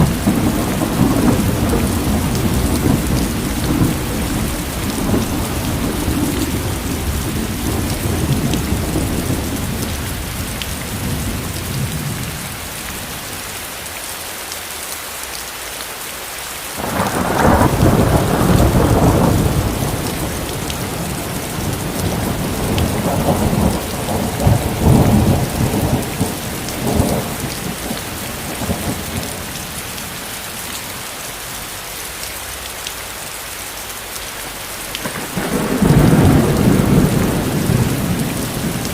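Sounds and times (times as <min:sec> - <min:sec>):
rolling thunder: 0:00.0 - 0:12.5, 0:16.8 - 0:30.4, 0:35.0 - 0:38.9
steady rain: 0:00.0 - 0:38.9.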